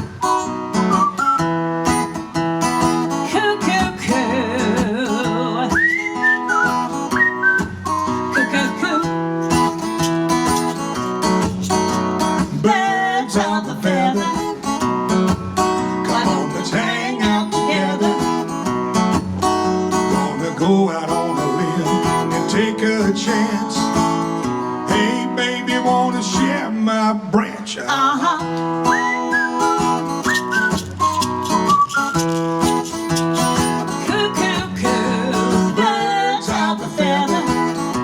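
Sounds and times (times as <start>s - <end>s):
whistling: 0.0s - 2.2s, 5.7s - 10.2s, 28.8s - 33.8s
acoustic guitar strumming: 0.0s - 38.0s.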